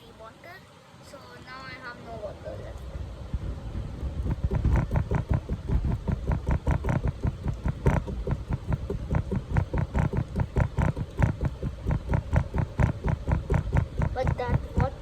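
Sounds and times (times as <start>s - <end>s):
chisel tapping into plaster: 4.3s - 15.0s.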